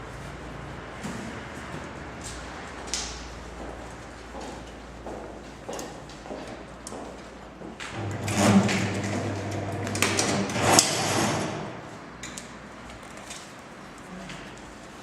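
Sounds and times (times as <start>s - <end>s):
machine clacks: 7.9s - 11.8s
strapping machine motor humming: 7.9s - 12.0s.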